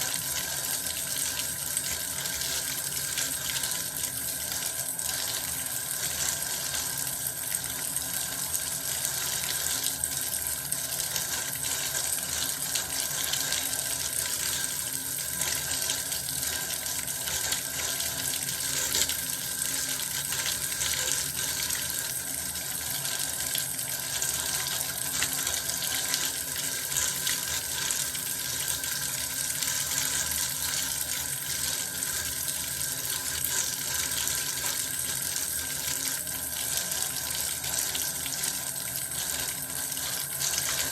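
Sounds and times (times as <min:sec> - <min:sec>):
water running from bath tap: 0:00.0 - 0:40.9.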